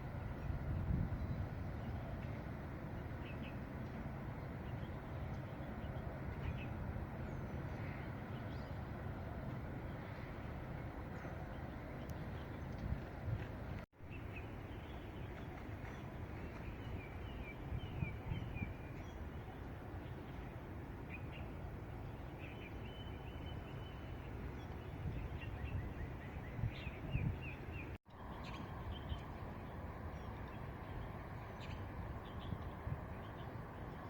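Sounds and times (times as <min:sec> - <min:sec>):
low outdoor rumble: 0:23.3 - 0:34.0.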